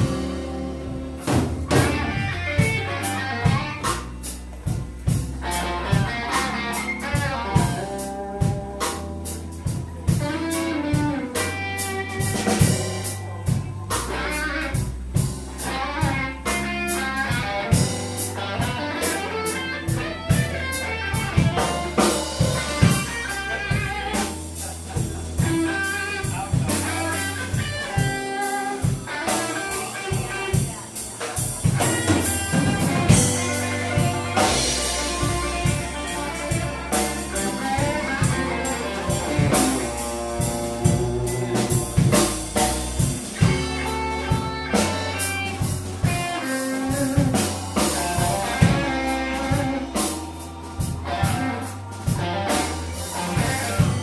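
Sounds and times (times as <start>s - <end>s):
electric guitar solo: 0.0s - 54.0s
live blues band: 0.0s - 54.0s.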